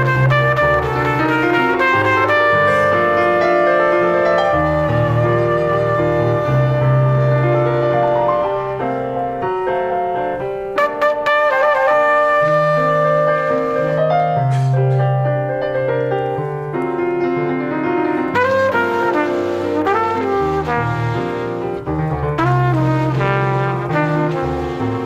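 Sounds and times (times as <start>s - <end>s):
trumpets and trombones chords: 0.0s - 8.8s, 10.8s - 14.8s, 18.2s - 25.0s
piano: 0.0s - 25.0s.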